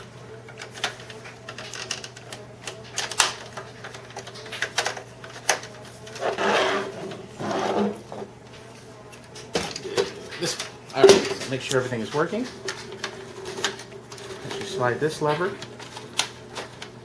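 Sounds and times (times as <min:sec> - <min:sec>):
plastic handling sound: 0:00.4 - 0:17.0
plastic parts clicking and tapping: 0:00.5 - 0:05.8.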